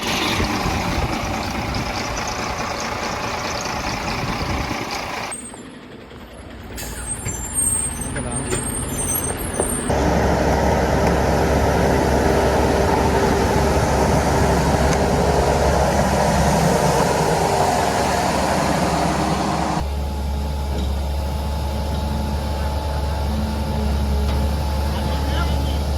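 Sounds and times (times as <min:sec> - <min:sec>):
heavy diesel engine under load: 0:00.0 - 0:25.9.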